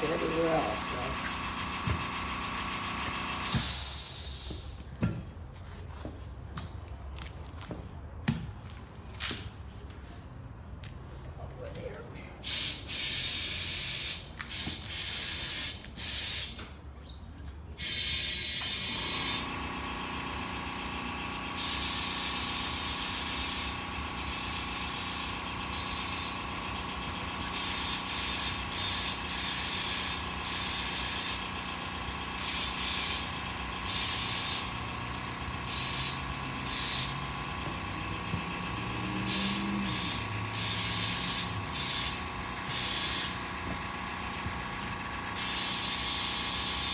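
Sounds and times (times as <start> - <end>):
air compressor humming: 0.0 - 5.0, 12.4 - 16.8, 17.8 - 46.9
compressed air hissing from hose: 3.4 - 4.9, 12.4 - 16.6, 17.8 - 19.5, 21.5 - 26.4, 27.5 - 31.4, 32.4 - 34.7, 35.6 - 37.3, 39.0 - 43.4, 45.3 - 46.9.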